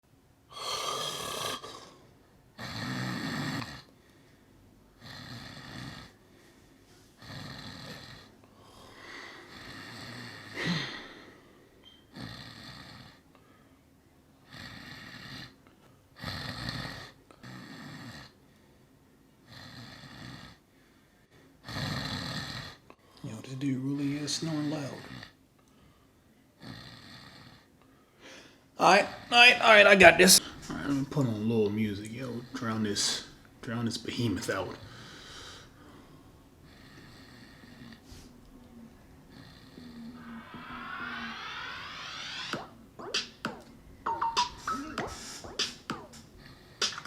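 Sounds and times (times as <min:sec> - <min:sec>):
man snoring: 0:00.5 - 0:03.9, 0:05.0 - 0:06.2, 0:07.2 - 0:11.2, 0:12.2 - 0:13.2, 0:16.2 - 0:18.4, 0:19.5 - 0:20.6, 0:21.7 - 0:22.8, 0:39.3 - 0:42.5.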